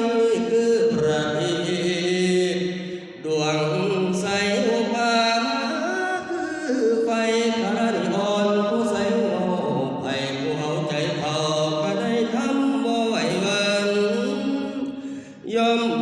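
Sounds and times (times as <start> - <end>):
man chanting in held notes: 0.0 - 16.0.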